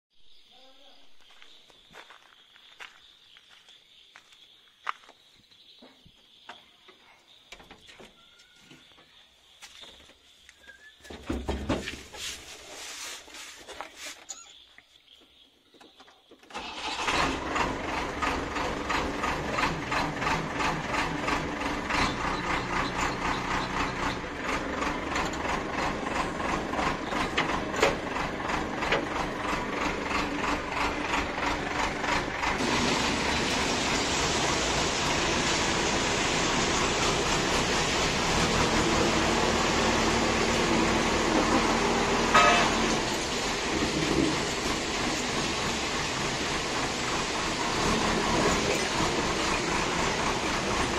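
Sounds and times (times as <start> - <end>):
diesel engine starting and running: 15.8 - 50.9
engine hiss: 16.5 - 50.9.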